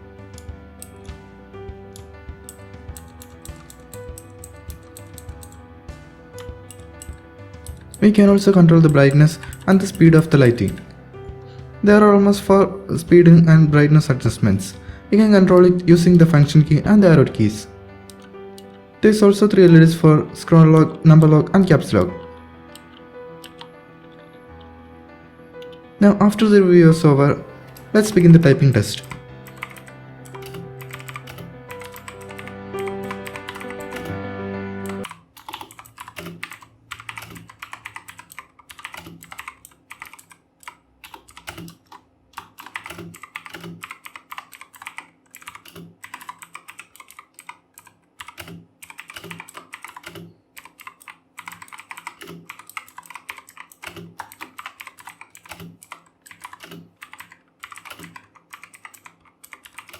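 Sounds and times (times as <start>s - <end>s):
background music: 0.0s - 40.4s
mechanical keyboard typing: 0.2s - 1.2s, 1.8s - 11.0s, 15.2s - 24.7s, 25.6s - 59.9s.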